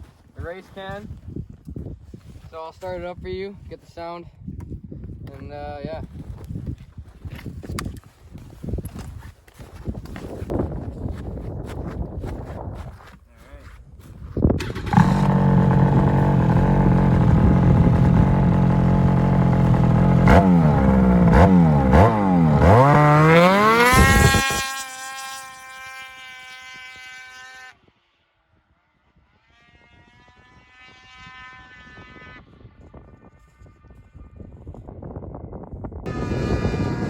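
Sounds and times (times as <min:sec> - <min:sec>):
faint engine note: 0:14.6 - 0:24.4, 0:36.1 - 0:37.0
snowmobile engine idling and revving: 0:14.6 - 0:27.8, 0:29.0 - 0:35.2, 0:36.0 - 0:37.0.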